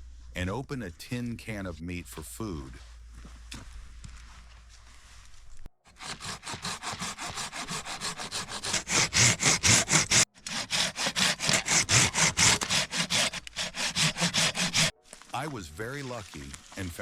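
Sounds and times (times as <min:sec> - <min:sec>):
hand saw cutting wood: 0:05.9 - 0:15.0.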